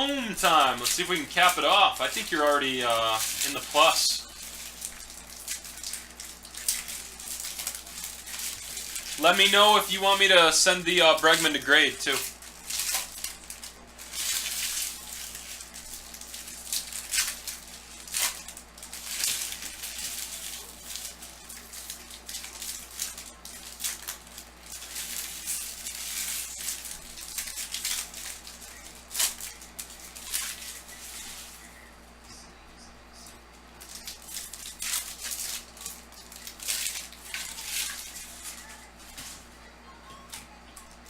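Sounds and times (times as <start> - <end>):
sharp crackles: 0.0 - 31.8
foil packs crinkling and tearing: 0.0 - 31.9, 33.2 - 39.6.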